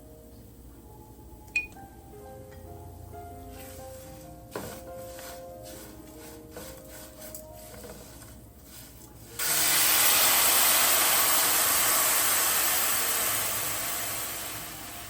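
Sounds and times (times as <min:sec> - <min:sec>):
loud even hiss: 0:09.4 - 0:15.0.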